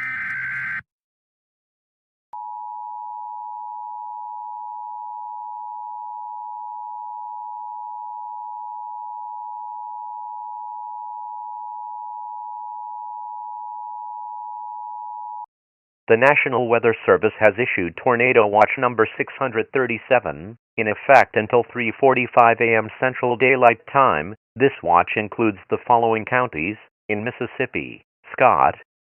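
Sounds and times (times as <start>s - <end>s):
long steady electronic alert tone: 2.4s - 15.5s.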